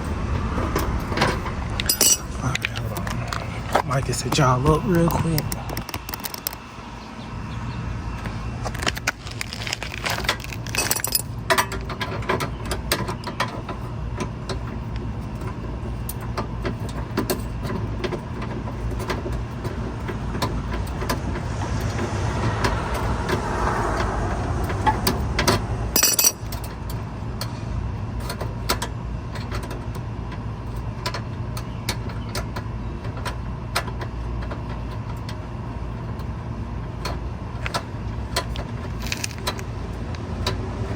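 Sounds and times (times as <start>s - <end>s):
metal tools clinking and knocking: 1.8s - 3.1s, 9.6s - 12.2s, 26.0s - 26.6s
steady low hum: 13.6s - 28.4s.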